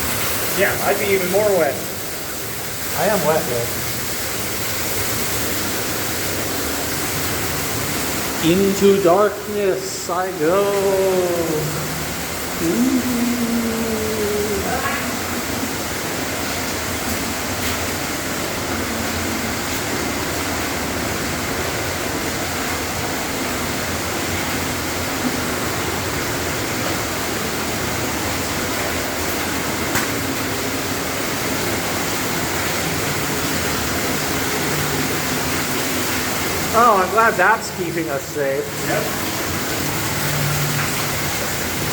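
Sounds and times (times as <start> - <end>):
waterfall rushing: 0.0 - 41.9.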